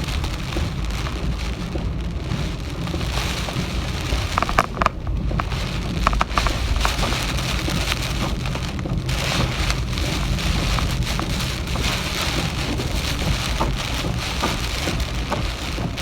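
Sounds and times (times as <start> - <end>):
heavy rain pouring: 0.0 - 16.0
low rumble: 0.0 - 16.0
sharp taps: 4.2 - 8.0.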